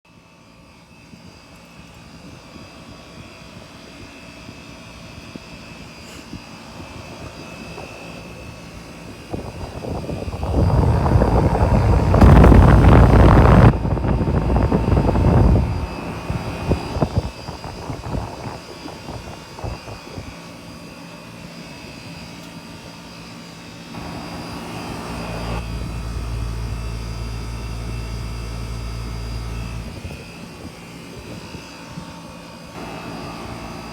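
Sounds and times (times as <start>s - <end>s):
air conditioner fan rushing: 2.5s - 33.9s
low hum: 7.0s - 20.2s, 24.0s - 30.7s.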